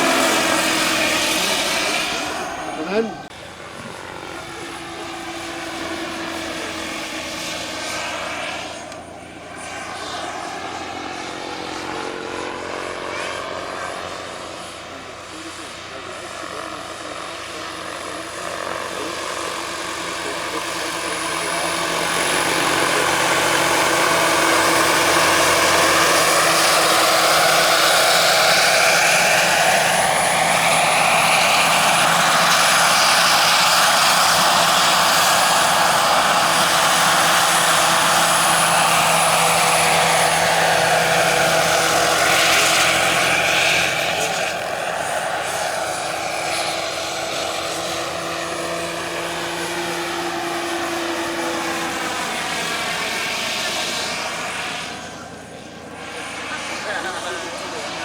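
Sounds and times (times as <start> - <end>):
gas turbine whining: 0.0 - 4.4
model helicopter rotor noise: 0.0 - 58.0.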